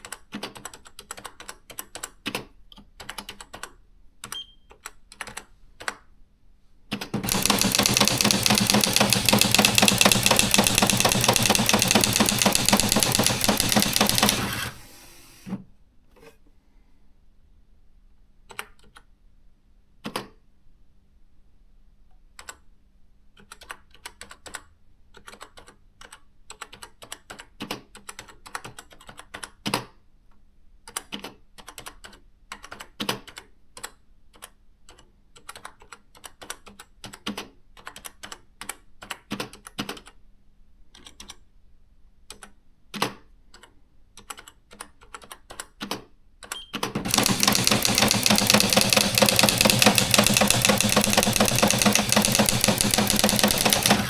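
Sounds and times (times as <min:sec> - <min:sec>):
typewriter key clicks: 0:07.2 - 0:14.8, 0:47.1 - 0:54.0
typewriter print mechanism rattling: 0:07.2 - 0:15.0, 0:47.0 - 0:54.0.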